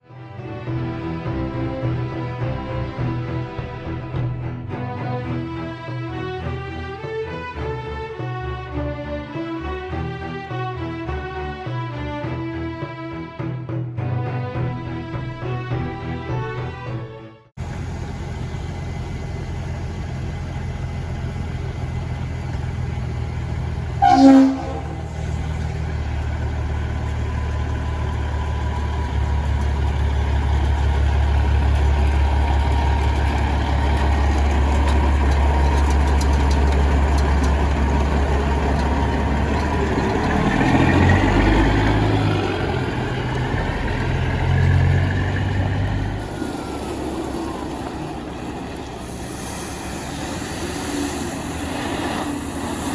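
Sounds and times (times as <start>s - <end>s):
diesel truck engine running: 17.6s - 52.9s
train horn blast: 23.9s - 26.8s.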